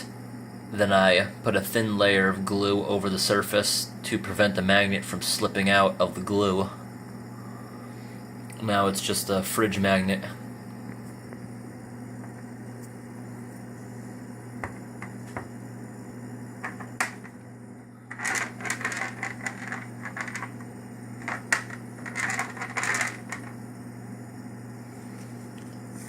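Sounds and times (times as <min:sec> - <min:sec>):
steady low hum: 0:00.0 - 0:26.0
small hard objects clattering: 0:18.1 - 0:23.5.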